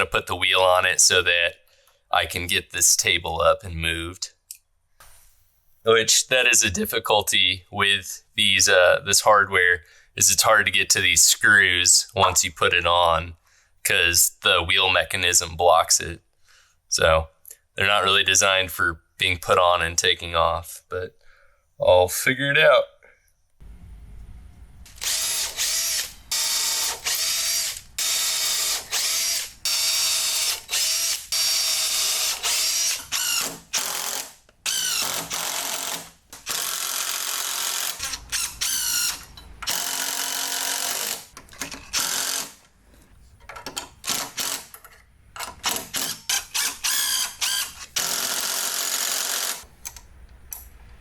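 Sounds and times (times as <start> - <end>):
power drill driving screws: 24.9 - 42.6, 44.0 - 44.7, 45.6 - 49.6.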